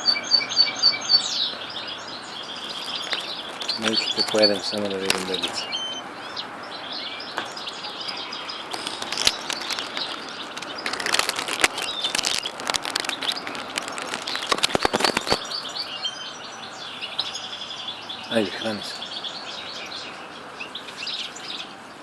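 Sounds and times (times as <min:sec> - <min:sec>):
nestlings begging chirps: 0:00.0 - 0:22.0
rustling and crackling clicks: 0:02.6 - 0:05.9, 0:07.4 - 0:15.9.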